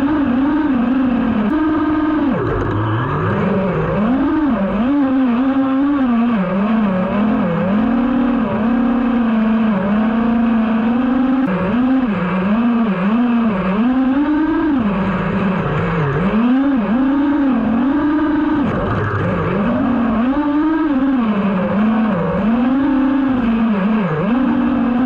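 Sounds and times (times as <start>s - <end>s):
quadcopter motors whining: 0.0s - 25.0s.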